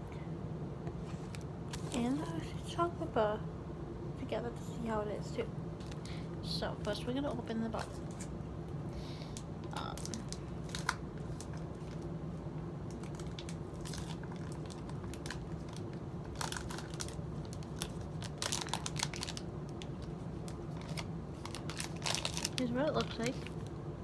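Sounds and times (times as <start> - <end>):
low steady hum: 0.0 - 24.0
wrapper crinkling and tearing: 9.7 - 12.1, 12.9 - 23.7.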